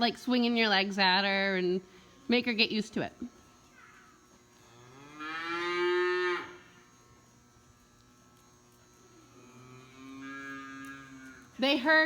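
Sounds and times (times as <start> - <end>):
cow mooing: 4.7 - 6.7, 9.4 - 11.5.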